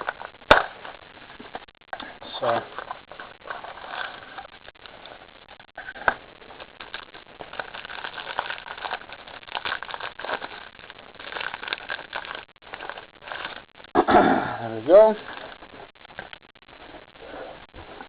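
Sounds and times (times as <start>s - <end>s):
packaging crinkling and tearing: 0.0s - 1.6s, 2.3s - 5.2s, 5.8s - 13.8s, 15.2s - 16.4s.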